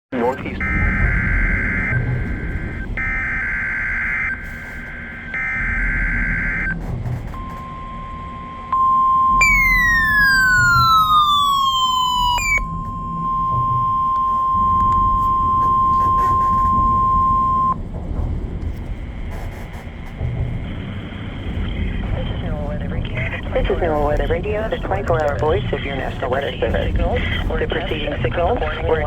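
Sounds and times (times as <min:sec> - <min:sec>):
radio hiss and hum: 0:00.1 - 0:07.8, 0:09.4 - 0:17.8, 0:19.4 - 0:29.0
steady warning alarm tone: 0:00.4 - 0:17.8
loud tone sliding downward: 0:07.4 - 0:17.8
warbling data bursts: 0:09.4 - 0:17.8.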